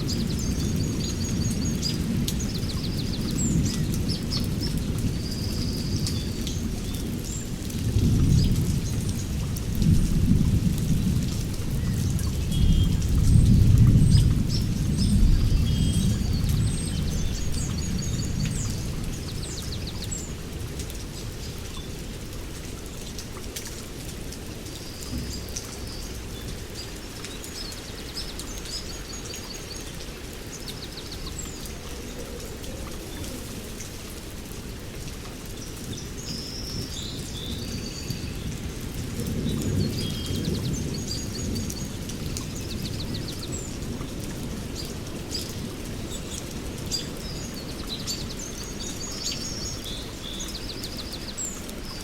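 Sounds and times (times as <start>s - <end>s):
heavy rain on leaves: 0.0s - 52.0s
small birds chirping: 11.8s - 22.0s, 24.7s - 34.2s, 39.2s - 52.0s.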